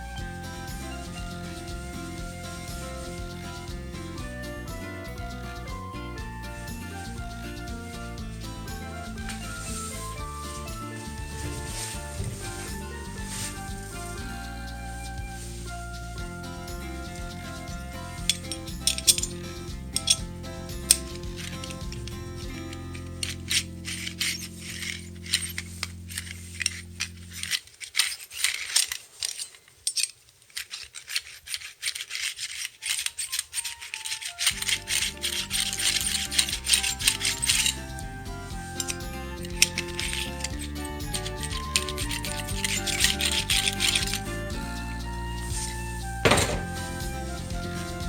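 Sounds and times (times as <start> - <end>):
background music with held notes: 0.0 - 27.5, 33.0 - 48.0
hiss: 7.7 - 20.0.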